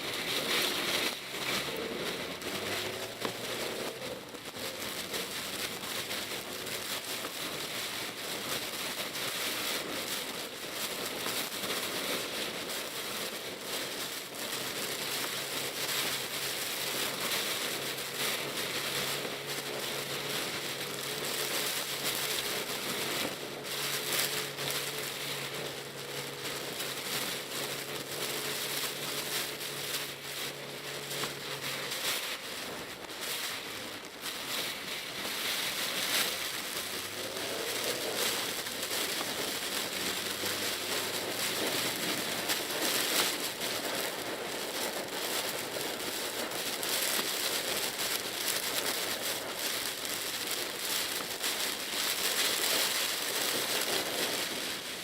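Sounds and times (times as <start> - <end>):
heavy rain on car roof: 0.0 - 55.0
small car engine humming: 0.1 - 49.2.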